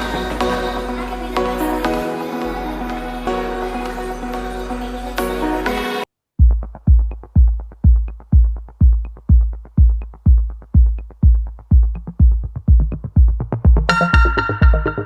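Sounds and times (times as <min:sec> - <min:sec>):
electronic music with kick drum: 0:00.0 - 0:15.0.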